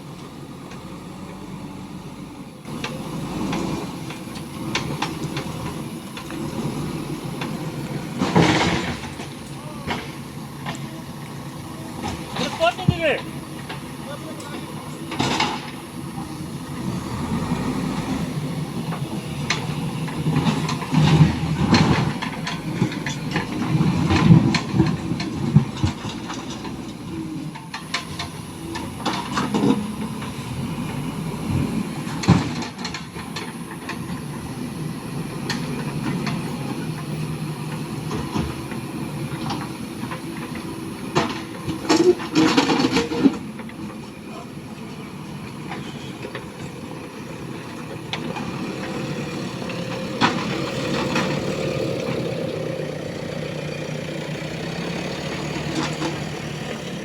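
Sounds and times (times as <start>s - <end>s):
diesel engine under load: 0.0s - 57.0s
metal clanks and knocks: 7.4s - 11.0s, 18.8s - 29.8s, 39.4s - 44.1s.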